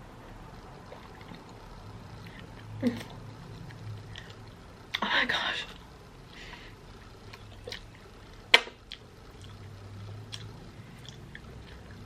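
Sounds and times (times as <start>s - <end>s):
close-up chewing: 0.7s - 5.0s, 6.3s - 12.0s
wet mouth clicks and smacks: 7.3s - 9.7s, 10.3s - 12.0s.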